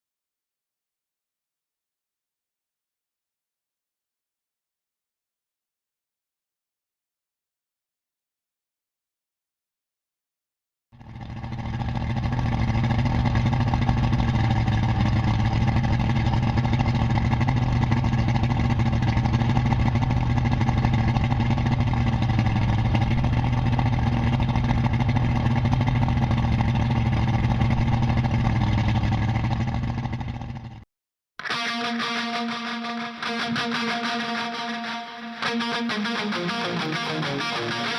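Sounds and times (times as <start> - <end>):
engine running with low hum: 11.0 - 30.8.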